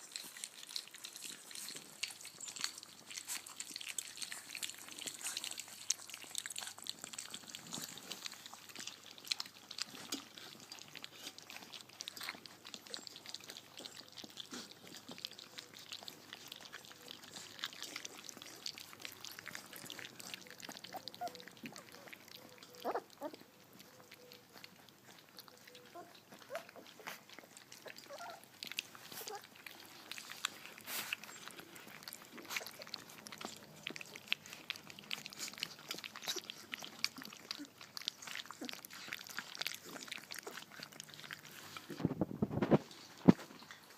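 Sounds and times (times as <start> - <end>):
puppies squeaking: 0.0 - 42.0
puppies smacking and slurping: 0.0 - 43.9.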